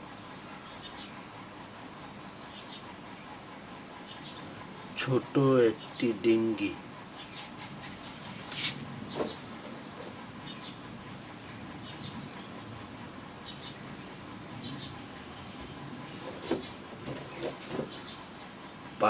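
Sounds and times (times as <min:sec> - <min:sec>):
high pulsing chirp: 0:08.8 - 0:19.0.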